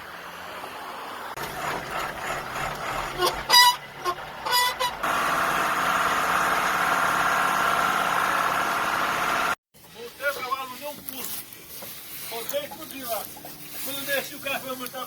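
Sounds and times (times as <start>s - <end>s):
truck engine running: 1.2s - 9.6s.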